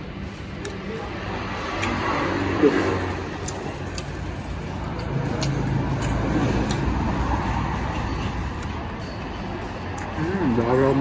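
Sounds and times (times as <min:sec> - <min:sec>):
low rumble of road traffic: 0:00.0 - 0:11.0.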